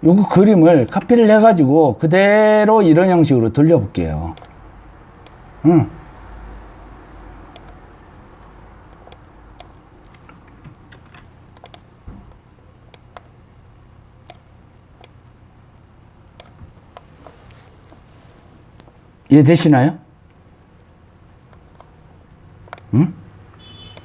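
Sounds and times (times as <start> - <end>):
low steady hum: 0.0 - 24.0
mouse and keyboard clicks: 4.4 - 4.6, 7.1 - 7.8, 8.9 - 11.9.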